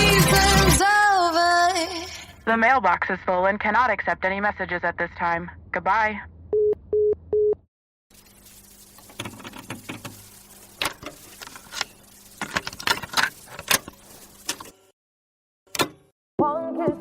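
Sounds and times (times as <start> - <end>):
clicking and crackling rustle: 8.2 - 14.8.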